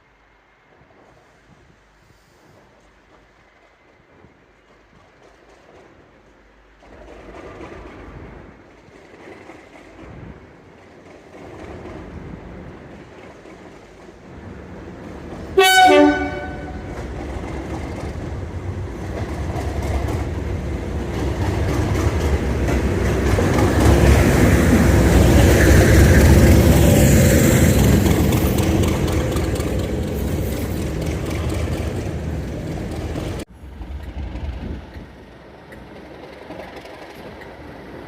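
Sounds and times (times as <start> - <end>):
diesel locomotive engine: 0.0 - 38.0
locomotive horn blast: 15.6 - 17.0.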